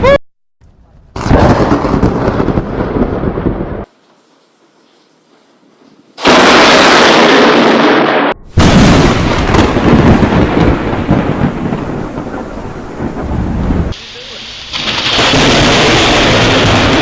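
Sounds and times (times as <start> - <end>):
loud thunderclap rolling: 1.1 - 3.9, 6.2 - 14.0, 14.7 - 17.0.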